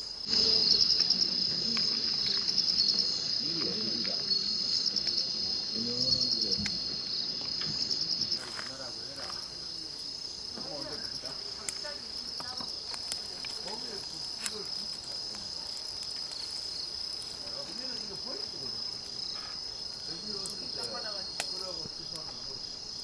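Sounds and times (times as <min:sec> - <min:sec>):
crickets chirping: 0:00.0 - 0:23.0
faint sharp clicks: 0:08.4 - 0:23.0.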